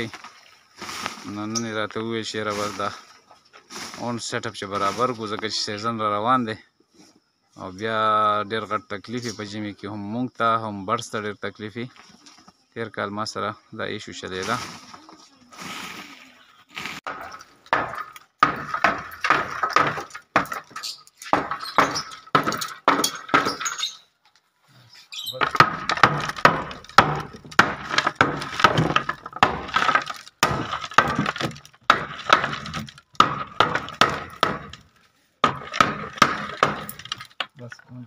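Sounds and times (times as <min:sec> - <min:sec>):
hammer striking wooden planks: 0:17.1 - 0:23.8, 0:25.4 - 0:37.5.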